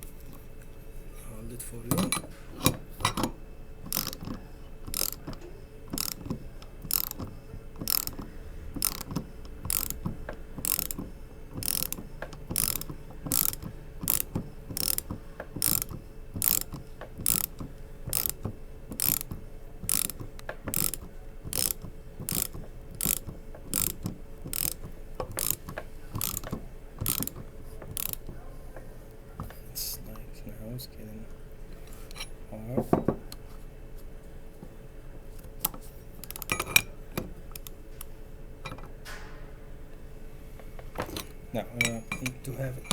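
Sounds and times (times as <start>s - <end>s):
ratchet wrench clicking: 1.9s - 28.3s, 36.2s - 37.8s.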